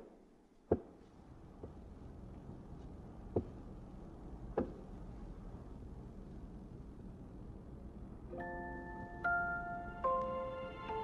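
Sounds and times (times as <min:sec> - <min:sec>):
faint low hum: 0:00.0 - 0:11.0
sharp knocks: 0:04.5 - 0:04.9.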